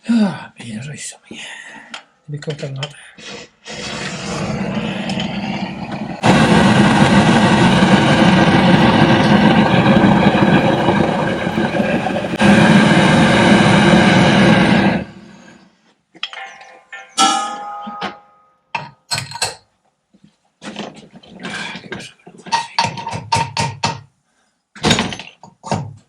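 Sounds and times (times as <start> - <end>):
gas torch roaring: 3.6 - 15.7.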